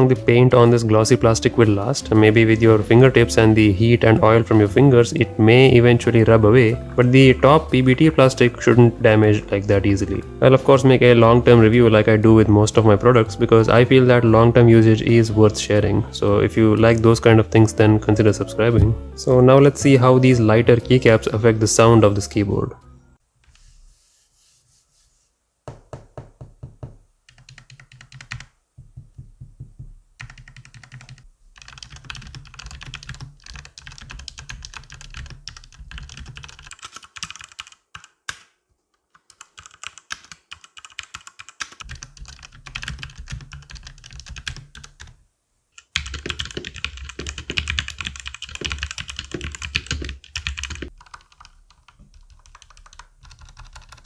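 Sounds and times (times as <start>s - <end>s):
fast mechanical keyboard typing: 27.3s - 28.6s, 30.2s - 38.4s, 39.1s - 45.2s, 45.8s - 54.0s.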